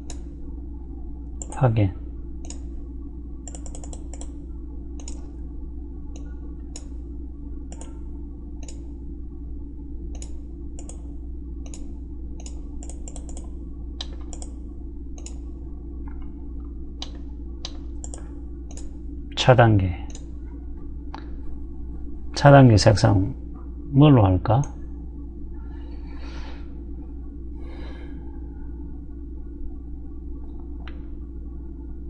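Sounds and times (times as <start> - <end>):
computer mouse clicks: 0.0 - 0.3, 1.4 - 1.6, 2.4 - 2.7, 3.4 - 4.4, 5.0 - 5.3, 6.1 - 7.0, 7.7 - 8.0, 8.6 - 8.8, 10.1 - 14.6, 15.2 - 15.4, 17.0 - 18.9
low electrical hum: 0.0 - 32.0.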